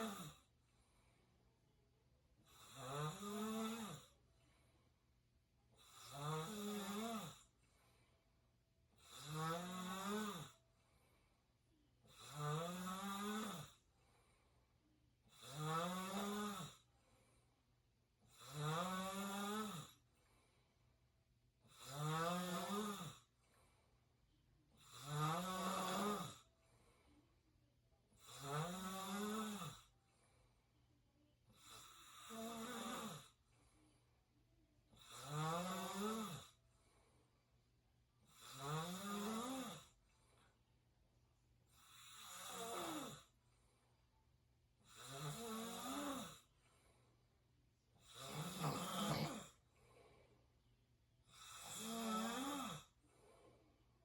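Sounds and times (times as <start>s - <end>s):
person snoring: 0.0s - 0.4s, 2.5s - 4.2s, 5.8s - 7.5s, 9.0s - 10.6s, 12.1s - 13.8s, 15.3s - 16.8s, 18.3s - 20.0s, 21.7s - 23.3s, 24.8s - 26.4s, 28.2s - 29.9s, 31.6s - 33.3s, 35.0s - 36.6s, 38.3s - 39.9s, 41.8s - 43.4s, 44.8s - 46.5s, 48.0s - 49.6s, 51.3s - 53.0s.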